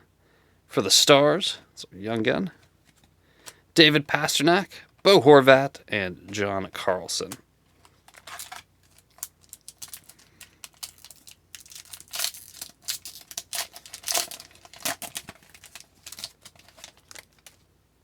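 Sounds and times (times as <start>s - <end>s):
foil wrapper crinkling: 7.8s - 17.6s.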